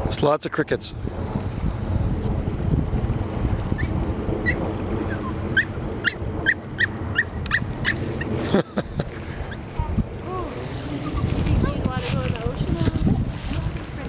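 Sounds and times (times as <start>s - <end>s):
crickets chirping: 0.0s - 14.0s
wind rumble on microphone: 0.0s - 14.0s
sharp low animal chirps: 1.1s - 8.4s.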